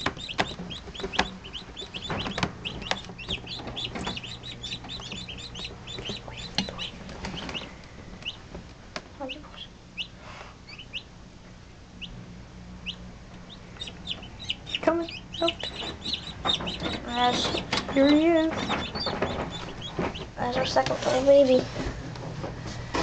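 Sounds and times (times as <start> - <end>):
chicks peeping: 0.0 - 11.1, 12.8 - 22.0
low steady hum: 0.0 - 23.0.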